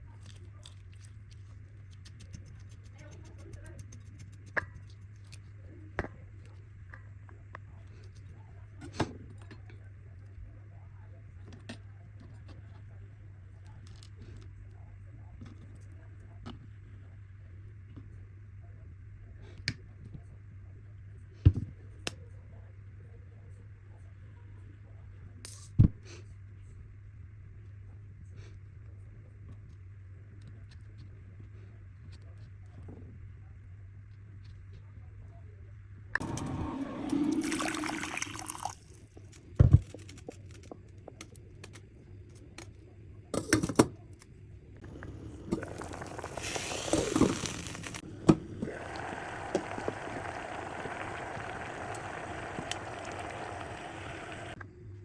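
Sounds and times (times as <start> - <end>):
liquid pouring: 36.2 - 39.0, 44.8 - 54.6
steady low hum: 44.4 - 54.6.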